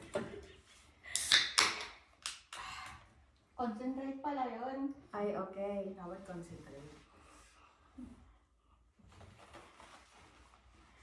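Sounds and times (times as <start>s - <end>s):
faint rustling: 6.2s - 11.0s.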